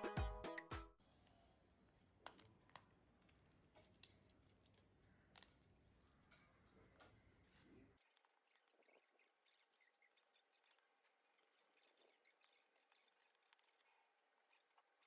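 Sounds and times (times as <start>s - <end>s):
background music with a beat: 0.0s - 0.9s
faint small clicks and taps: 2.2s - 9.0s, 10.6s - 15.0s.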